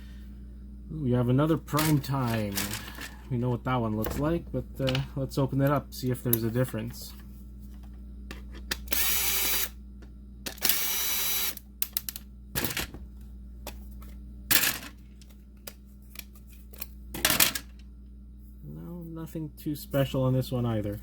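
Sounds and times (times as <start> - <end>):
electric screwdriver whirring: 8.9 - 9.8, 10.5 - 11.6.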